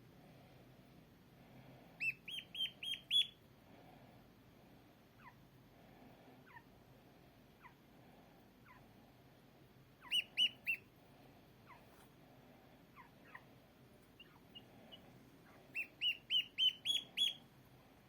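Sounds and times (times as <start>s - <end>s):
high arched animal chirps: 10.0s - 10.9s, 15.7s - 17.4s.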